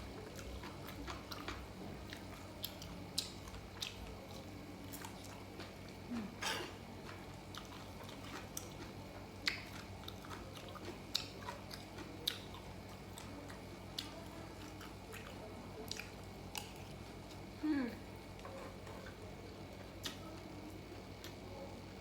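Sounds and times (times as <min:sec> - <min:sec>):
chewing and biting: 0:00.0 - 0:17.5.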